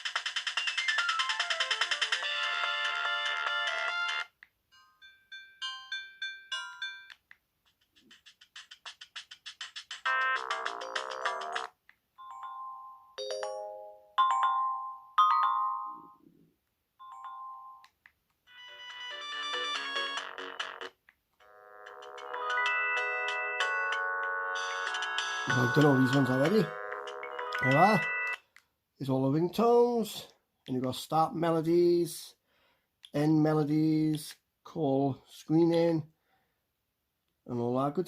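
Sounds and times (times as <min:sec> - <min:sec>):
phone ringtone melodies: 0:00.1 - 0:07.3, 0:08.2 - 0:16.3, 0:17.0 - 0:17.9, 0:18.5 - 0:28.4
phone alert tones: 0:21.6 - 0:28.4.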